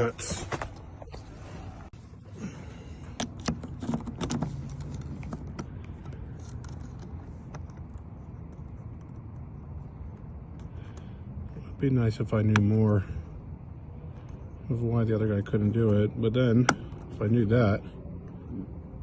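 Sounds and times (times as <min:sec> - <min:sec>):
steady low hum: 0:00.0 - 0:19.0
lock pick clicking and scraping: 0:03.2 - 0:11.1.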